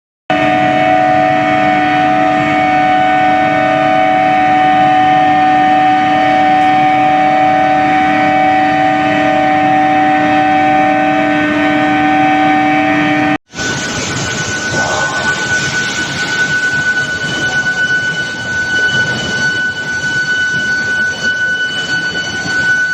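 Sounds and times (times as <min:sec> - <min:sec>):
induction furnace electrical hum: 0:13.1 - 0:18.0.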